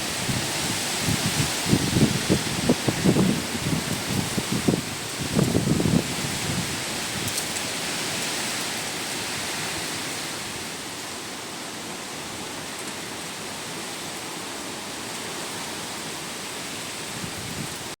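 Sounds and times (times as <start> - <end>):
heavy wind rushing: 0.0 - 7.3, 17.1 - 17.9.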